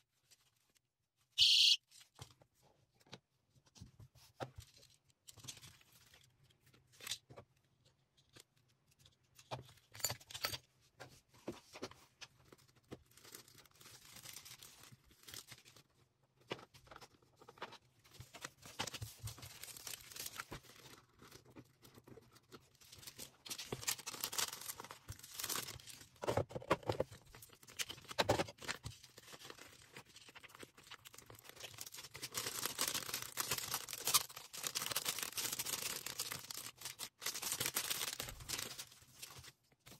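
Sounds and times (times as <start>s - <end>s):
packaging rustling and crinkling: 11.5s - 39.9s.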